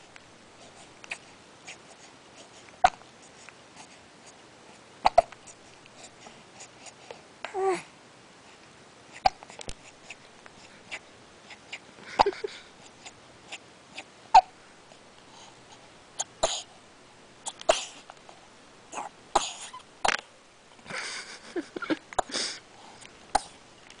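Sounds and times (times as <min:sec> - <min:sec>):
baby hiccuping: 0:05.0 - 0:05.4, 0:09.1 - 0:09.6, 0:14.3 - 0:14.6
baby cooing: 0:07.4 - 0:07.9, 0:18.9 - 0:19.8.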